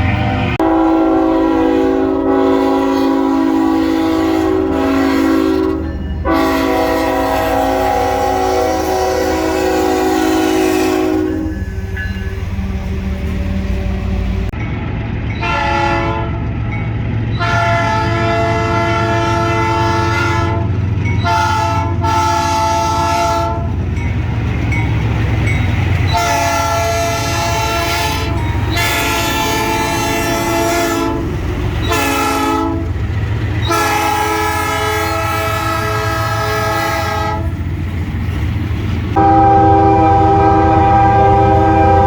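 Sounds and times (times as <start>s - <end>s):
locomotive air horn blasts: 0.0s - 11.6s, 15.4s - 16.4s, 17.4s - 23.8s, 26.1s - 33.0s, 33.6s - 37.6s, 39.2s - 42.0s
low rumble of train: 0.0s - 42.0s.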